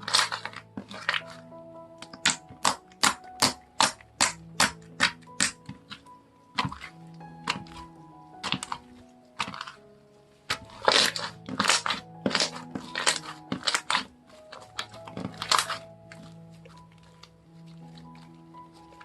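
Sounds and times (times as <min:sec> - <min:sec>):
soft background music: 0:00.0 - 0:19.0
slime crackling pops: 0:02.0 - 0:08.8.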